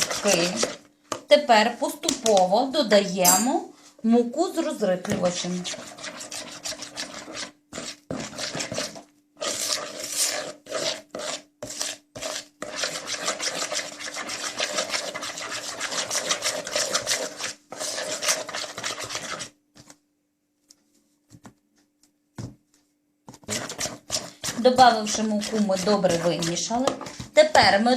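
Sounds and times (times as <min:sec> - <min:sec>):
utensil scraping mixing bowl: 0:00.0 - 0:02.5, 0:04.8 - 0:20.0, 0:23.3 - 0:27.9.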